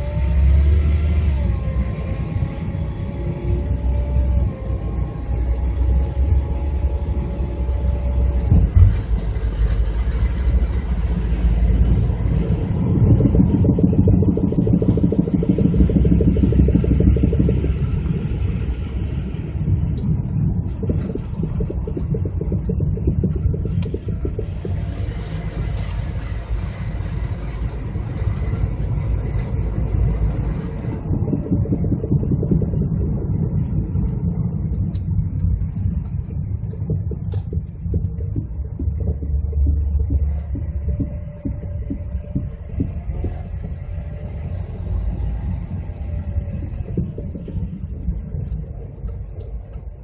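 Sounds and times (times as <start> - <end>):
car road noise: 0.0 - 50.0
rapid knocking from front axle: 36.0 - 43.4.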